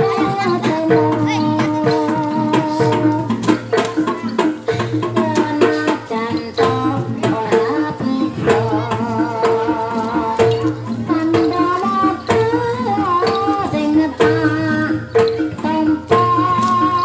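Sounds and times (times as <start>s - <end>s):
hand drums beating quick rhythm: 0.0s - 17.0s
pitched percussion melody: 0.0s - 17.0s.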